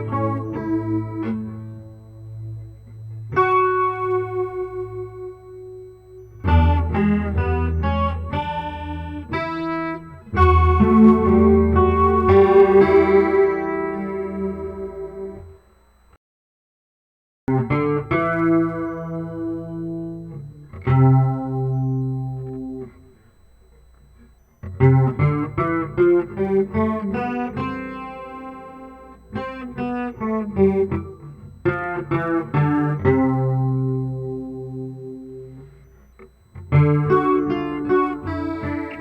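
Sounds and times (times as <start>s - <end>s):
quick picked guitar notes: 0.0s - 15.6s
guitar chords strummed: 0.0s - 15.7s, 17.5s - 39.0s.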